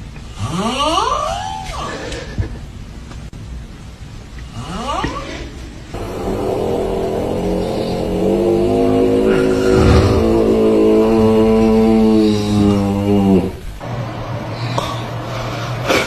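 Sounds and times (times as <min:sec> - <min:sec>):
person snoring: 0:09.2 - 0:11.1.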